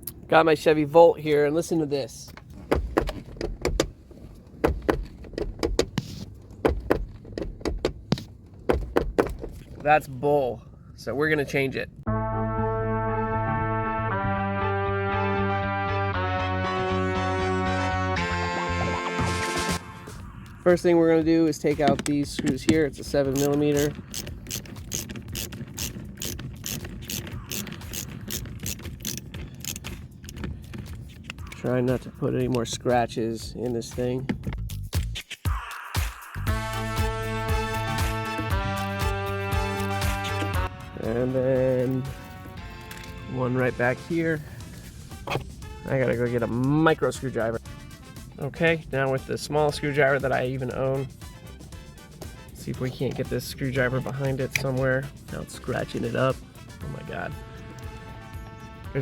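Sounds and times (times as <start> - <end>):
car door strap clicking: 2.3 - 9.9, 21.8 - 31.6, 45.1 - 45.6
ratchet clicking quickly: 23.3 - 29.9.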